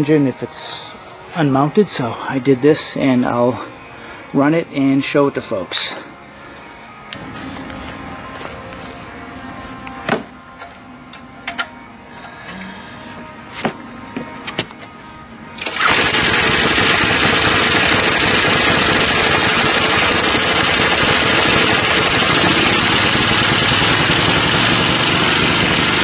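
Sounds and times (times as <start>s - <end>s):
snow thrower engine running: 15.6s - 26.0s.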